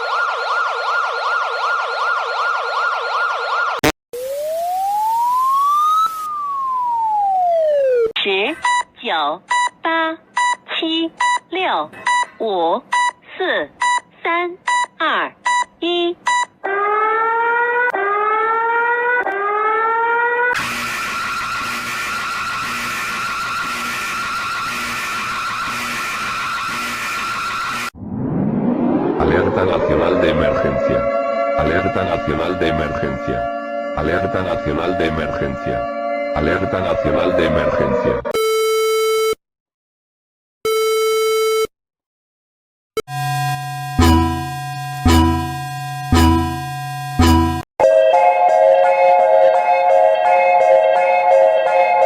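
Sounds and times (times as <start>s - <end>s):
fast electronic siren wail: 0.0s - 8.1s, 16.6s - 34.0s, 35.8s - 38.4s, 43.1s - 47.6s
slow siren wail: 0.0s - 8.2s, 16.6s - 38.4s, 43.1s - 52.0s
screeching alarm tone: 20.1s - 35.0s, 35.6s - 38.1s, 43.1s - 47.6s
faint low beeps: 43.7s - 47.6s.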